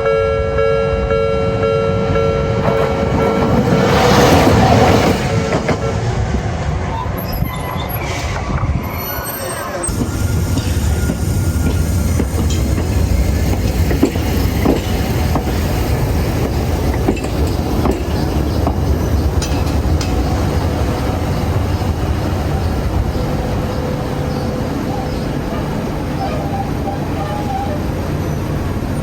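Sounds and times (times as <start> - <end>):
streetcar rumbling past: 0.0 - 29.0
wheel clacks over rail joints: 9.9 - 27.8.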